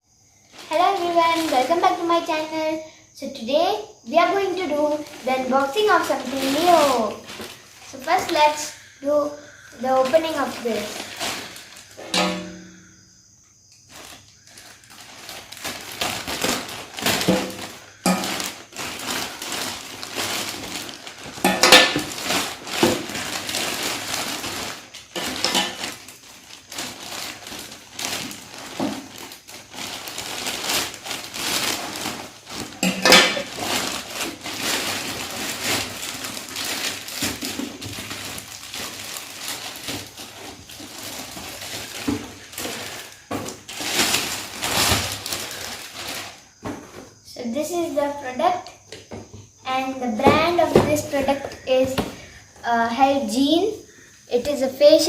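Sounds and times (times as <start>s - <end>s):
packaging rustling and scraping: 4.6s - 12.9s, 13.8s - 47.2s.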